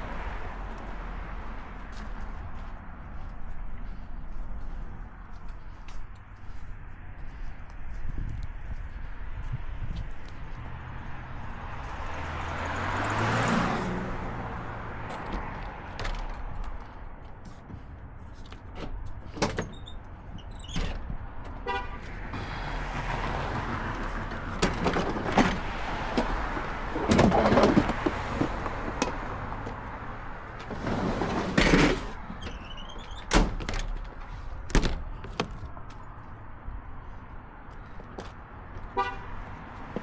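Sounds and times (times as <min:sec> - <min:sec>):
sharp knocks and clatter: 0:23.5 - 0:29.8
rushing scraping noise: 0:30.5 - 0:32.4.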